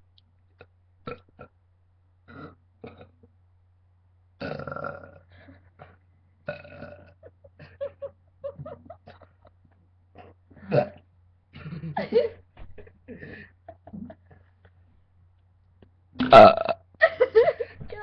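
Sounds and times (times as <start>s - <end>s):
person burping: 2.3s - 3.2s, 4.4s - 7.3s, 10.6s - 11.0s, 16.2s - 16.9s.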